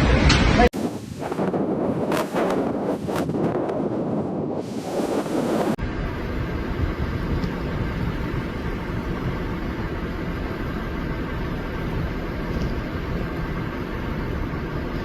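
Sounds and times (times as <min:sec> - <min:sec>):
wind noise burst: 0:00.0 - 0:15.0
vehicle engine and road noise: 0:05.3 - 0:15.0.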